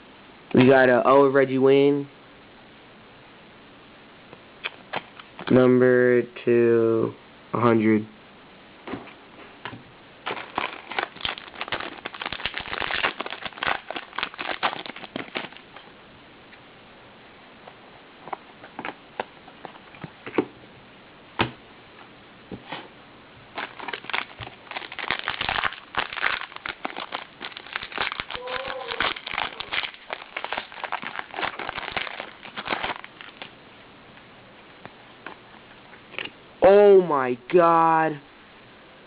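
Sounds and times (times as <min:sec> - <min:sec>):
wrapper crinkling and tearing: 0:10.2 - 0:15.8, 0:23.5 - 0:33.6.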